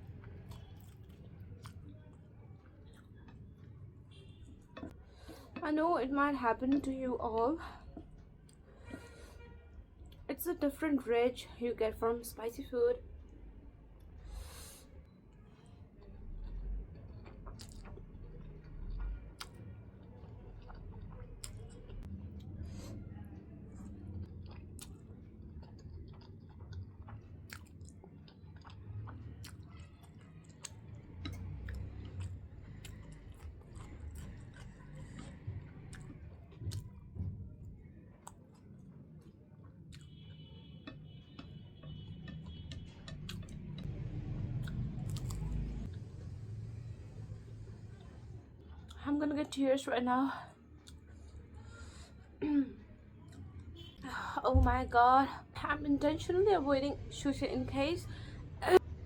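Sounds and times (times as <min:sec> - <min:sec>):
person chewing food: 0:00.0 - 0:07.0, 0:07.6 - 0:09.4, 0:13.9 - 0:46.3, 0:47.9 - 0:49.0, 0:50.7 - 0:52.4.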